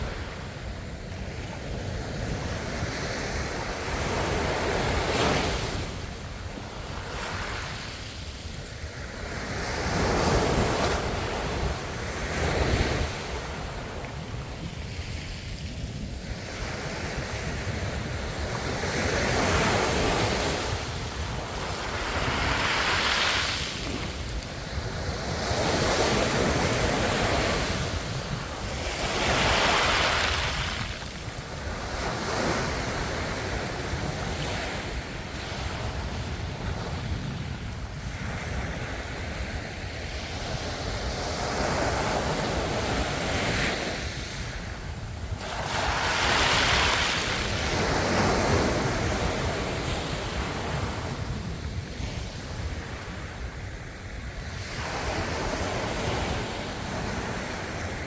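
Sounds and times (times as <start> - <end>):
ocean waves breaking: 18.2 - 36.7.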